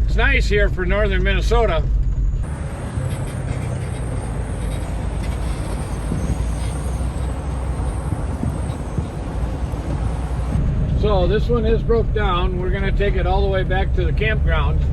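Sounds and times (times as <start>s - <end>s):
truck engine rumbling: 0.0s - 14.9s
small rattles and knocks: 2.5s - 10.6s.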